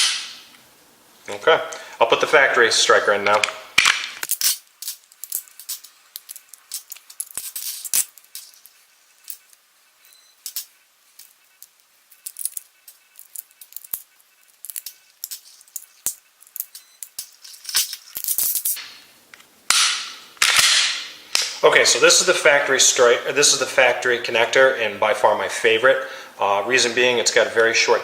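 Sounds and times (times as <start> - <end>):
pistol parts clicking and clinking: 3.2 - 8.7, 19.7 - 21.6.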